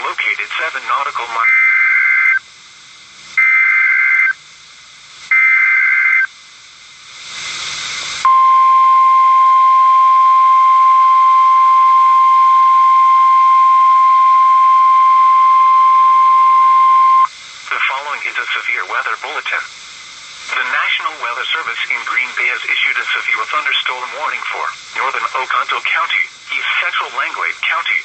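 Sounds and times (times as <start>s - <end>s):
radio hiss: 0.0s - 2.5s, 3.2s - 4.4s, 5.2s - 6.4s, 14.0s - 28.0s
warbling data tones: 1.4s - 2.4s, 3.4s - 4.4s, 5.3s - 6.3s.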